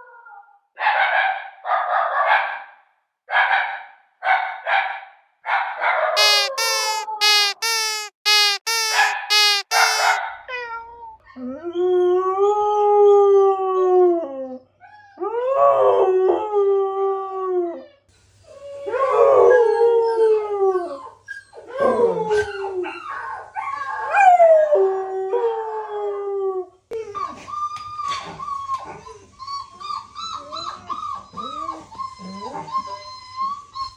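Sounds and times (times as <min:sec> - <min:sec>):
puppy yelping: 0:06.2 - 0:10.2, 0:27.2 - 0:33.9
puppy howling whines: 0:09.0 - 0:33.9.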